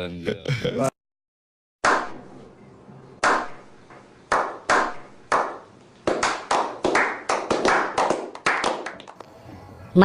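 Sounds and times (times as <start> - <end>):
hand clapping with echo: 4.3 - 9.2.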